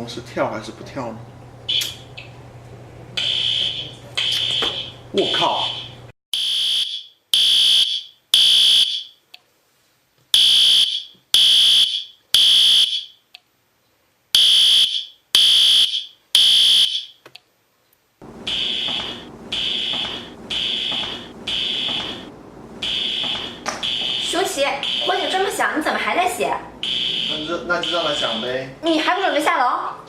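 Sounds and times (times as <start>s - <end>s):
fire alarm beeping: 1.7s - 2.0s, 3.2s - 9.2s, 10.4s - 13.2s, 14.4s - 17.2s, 18.4s - 26.1s, 26.8s - 28.8s
steady background noise: 16.2s - 30.0s.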